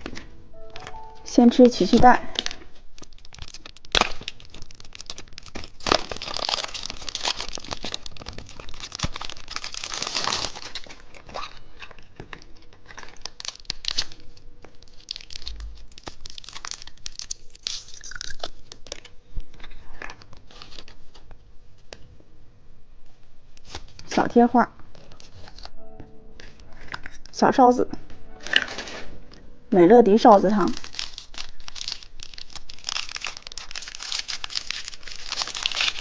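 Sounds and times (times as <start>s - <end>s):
plastic wrapper crinkling: 0.9s - 21.9s, 30.2s - 36.0s.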